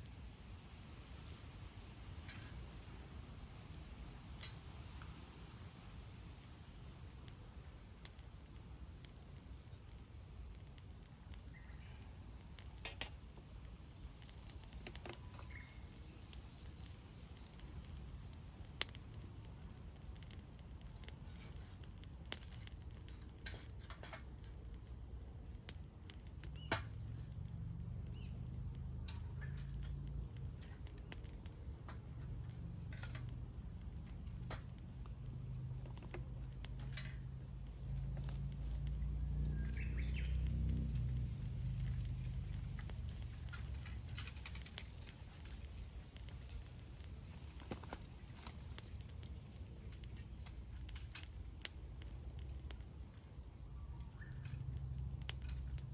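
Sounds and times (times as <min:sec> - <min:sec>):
wood fire crackling and popping: 0:00.0 - 0:55.9.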